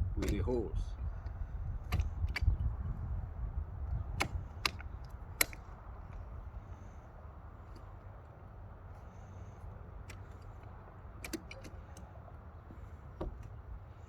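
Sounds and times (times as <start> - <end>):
roof bar clicks and knocks: 1.8 - 2.6, 4.1 - 6.2, 11.2 - 12.1, 12.7 - 13.6.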